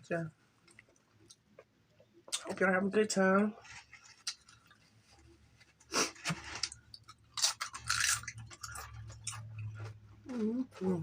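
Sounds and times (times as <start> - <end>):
person chewing crispy food: 3.6 - 11.0.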